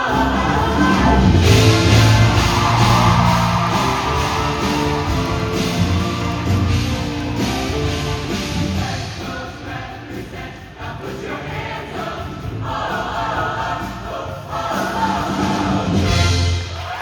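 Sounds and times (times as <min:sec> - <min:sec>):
live band playing: 0:00.0 - 0:09.5
choir singing: 0:00.0 - 0:17.0.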